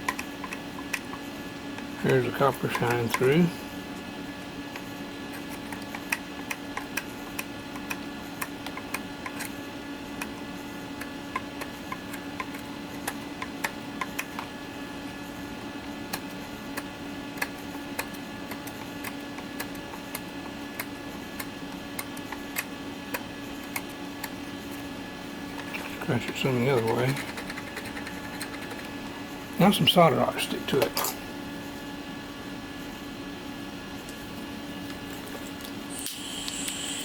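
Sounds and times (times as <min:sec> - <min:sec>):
steady low hum: 0:00.0 - 0:37.0.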